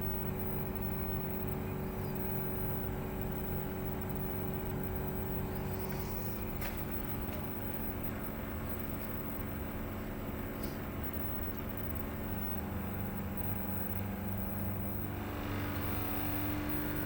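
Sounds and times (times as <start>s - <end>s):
air conditioner unit humming: 0.0s - 17.0s
low pulsing vibration: 0.0s - 17.0s.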